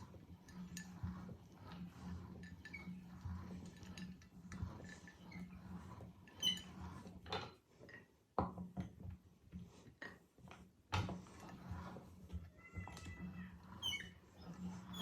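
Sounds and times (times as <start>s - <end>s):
faint squeaks: 0.5s - 7.2s, 11.2s - 15.0s.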